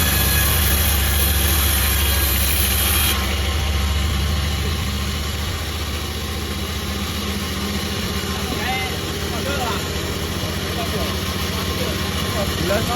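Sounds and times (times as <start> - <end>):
high hissing sawing: 0.0 - 5.6
sawmill engine drone: 0.0 - 12.9.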